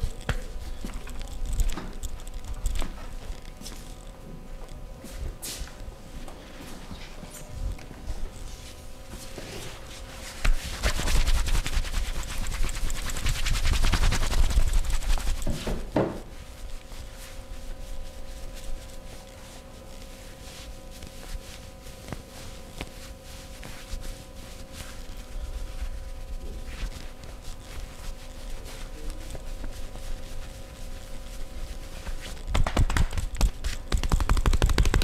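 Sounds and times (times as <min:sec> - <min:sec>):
hands tapping and slapping on body: 0:32.5 - 0:35.0.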